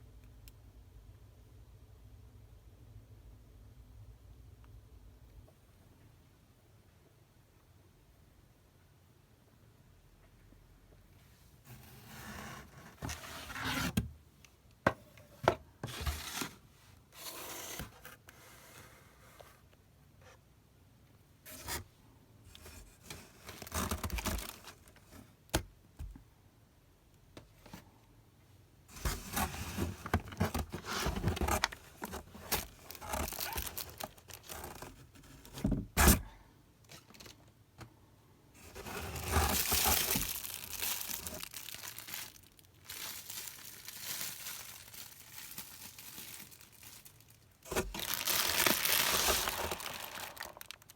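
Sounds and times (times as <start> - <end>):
packaging crinkling: 23.4 - 25.0, 29.1 - 35.2, 38.6 - 50.9
packaging being torn open: 31.4 - 34.9, 38.7 - 50.9.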